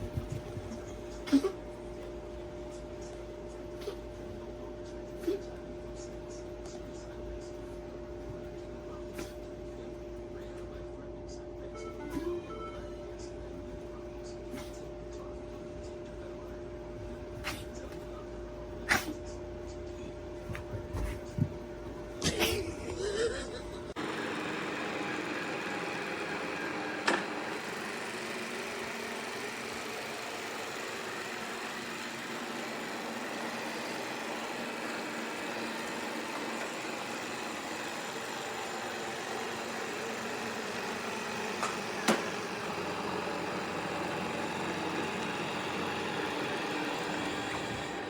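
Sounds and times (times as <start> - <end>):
robot vacuum whirring: 24.0 - 48.0.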